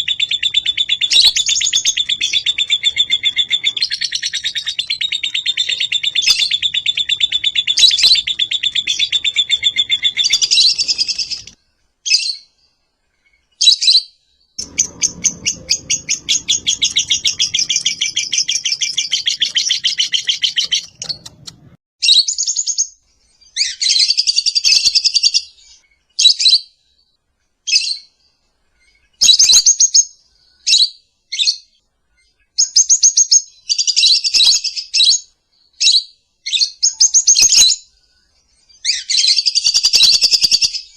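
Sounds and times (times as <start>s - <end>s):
lovebird chattering: 0.0s - 11.6s, 14.6s - 21.7s, 39.1s - 40.8s.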